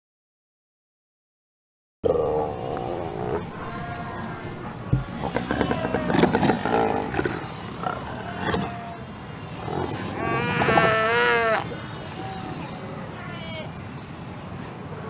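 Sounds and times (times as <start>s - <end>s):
seals growling and barking: 2.1s - 12.5s
wavering bleat-like seal call: 2.1s - 12.7s.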